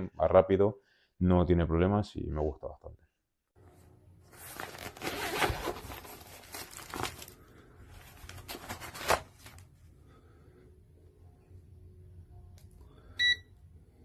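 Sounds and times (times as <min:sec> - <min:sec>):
rustling and crinkling: 0:03.8 - 0:09.9.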